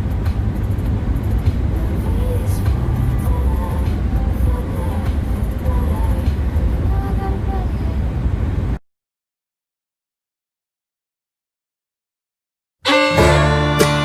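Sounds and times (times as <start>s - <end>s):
low rumbling noise: 0.0s - 8.8s.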